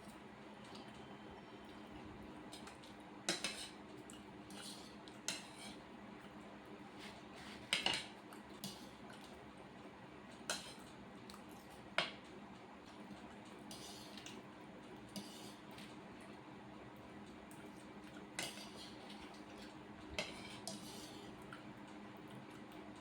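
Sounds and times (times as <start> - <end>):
cutlery clinking on a plate: 3.3 - 3.8, 4.5 - 5.8, 7.6 - 8.8, 18.4 - 19.2, 20.2 - 21.2.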